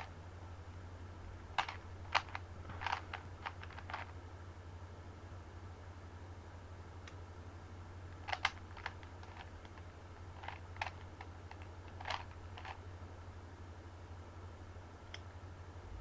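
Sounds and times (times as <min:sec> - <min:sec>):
steady low hum: 0:00.0 - 0:16.0
plastic cube clicks and clacks: 0:01.6 - 0:04.1, 0:08.2 - 0:12.8.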